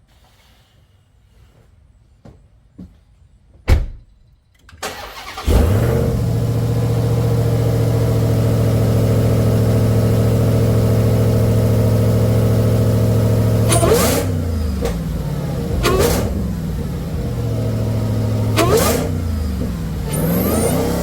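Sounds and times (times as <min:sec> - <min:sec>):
loud thump: 0:03.7 - 0:04.0
car engine starting and idling: 0:04.8 - 0:21.0.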